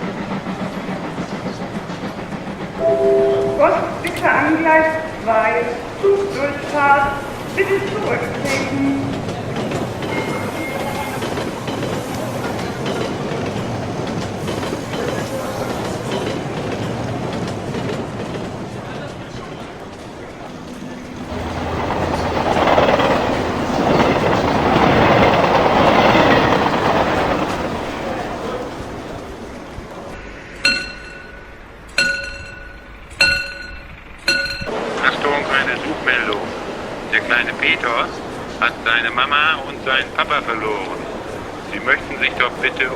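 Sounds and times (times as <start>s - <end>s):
train wheels rumbling on rails: 0.0s - 42.9s
bell chime ringing: 2.8s - 4.1s.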